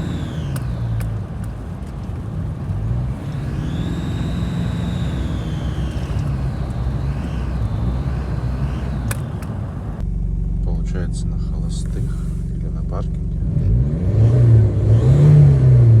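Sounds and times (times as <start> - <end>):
car engine revving: 0.0 - 10.1, 11.4 - 16.0
high-pitched turbo whistle: 3.2 - 9.4.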